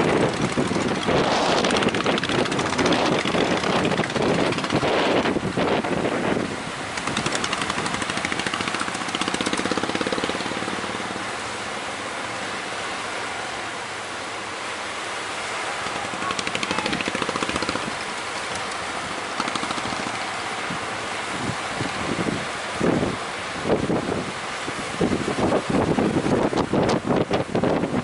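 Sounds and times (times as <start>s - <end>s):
wind on microphone: 0.0s - 11.6s, 15.4s - 28.0s
outboard motor running: 0.0s - 14.0s, 15.2s - 23.1s.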